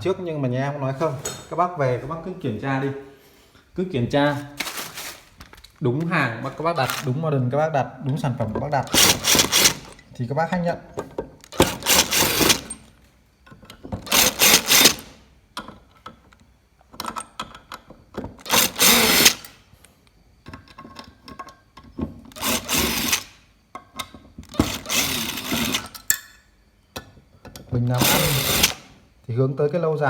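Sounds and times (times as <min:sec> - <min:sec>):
handheld power tool bursts: 0:06.6 - 0:07.2, 0:08.8 - 0:10.1, 0:11.4 - 0:12.9, 0:14.0 - 0:15.2, 0:18.4 - 0:19.6, 0:22.3 - 0:23.4, 0:24.4 - 0:26.2, 0:27.9 - 0:29.0.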